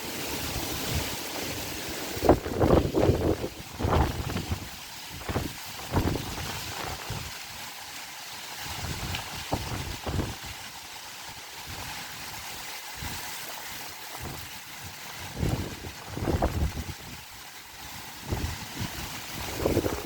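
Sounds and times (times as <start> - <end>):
storm-force wind rushing: 0.0 - 7.6, 8.6 - 10.7, 14.1 - 20.0
wind gusts buffeting microphone: 0.4 - 7.6, 8.6 - 10.7, 14.0 - 20.0.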